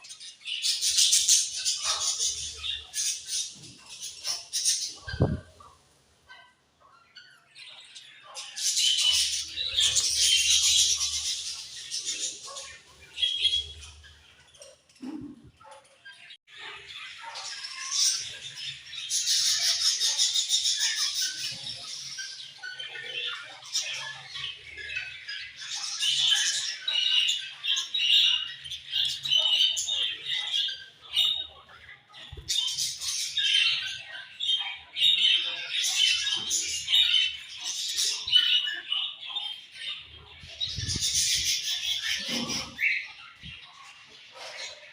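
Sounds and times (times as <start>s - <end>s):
budgerigars chirping and chattering: 0.0s - 44.9s.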